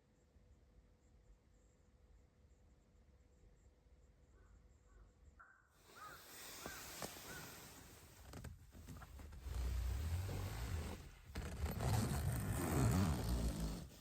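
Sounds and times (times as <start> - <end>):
bird calling: 5.4 - 7.8.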